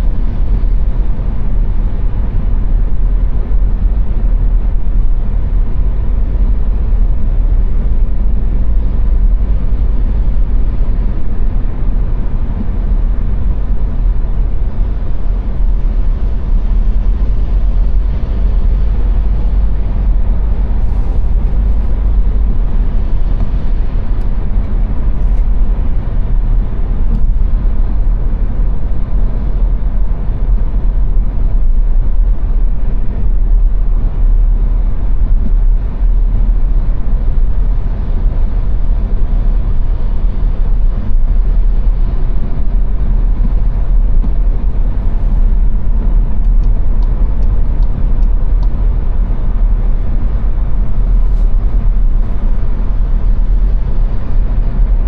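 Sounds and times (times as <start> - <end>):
engine drone: 0.0 - 55.0
road and tyre rumble: 0.0 - 55.0.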